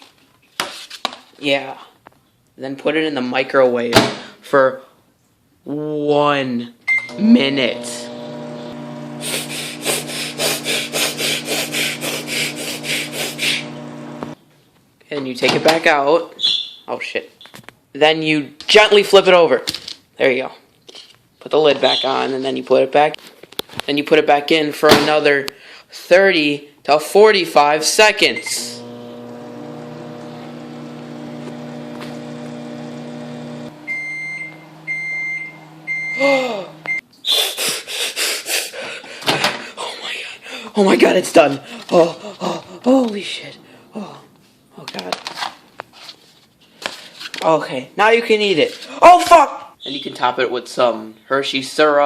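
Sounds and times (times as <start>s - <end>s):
microwave oven humming: 7.1s - 14.4s, 28.5s - 37.0s
rhythmic rasping: 9.2s - 13.8s
long high beeps: 33.8s - 37.0s.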